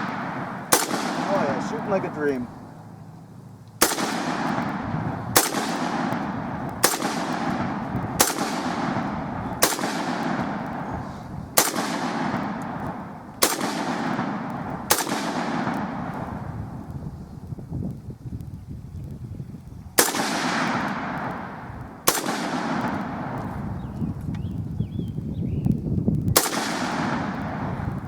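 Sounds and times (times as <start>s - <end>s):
rifle shots echoing: 0.0s - 3.2s, 3.8s - 16.8s, 20.0s - 23.7s, 26.4s - 28.0s.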